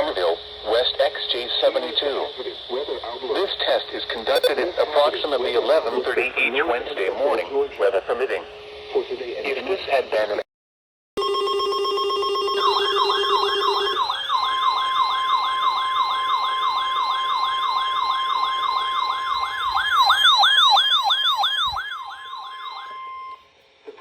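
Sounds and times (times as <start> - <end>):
high alarm tone: 4.3 - 4.6, 11.2 - 23.5
siren wailing: 11.2 - 23.5.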